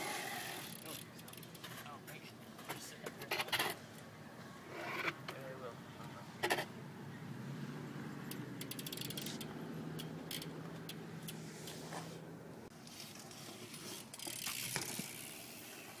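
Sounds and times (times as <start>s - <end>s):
bicycle hub ratchet clicking: 0.3s - 1.7s, 8.3s - 11.4s, 13.7s - 16.0s.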